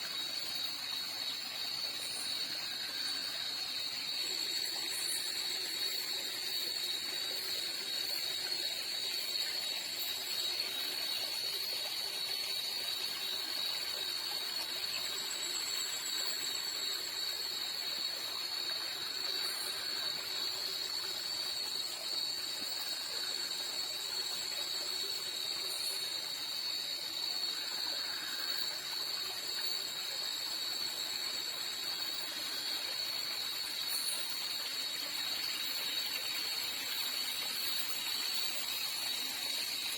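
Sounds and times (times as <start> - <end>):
night insects droning: 0.0 - 39.9.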